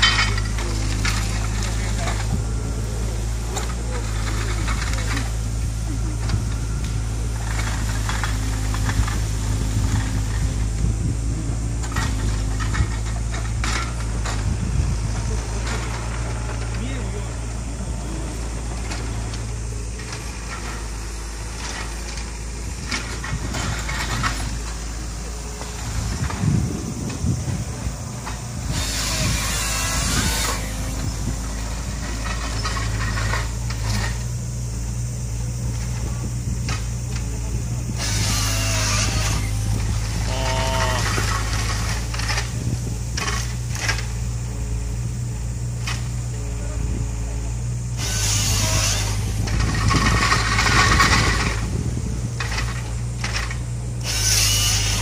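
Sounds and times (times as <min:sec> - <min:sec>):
heavy machine engine running: 0:00.0 - 0:55.0.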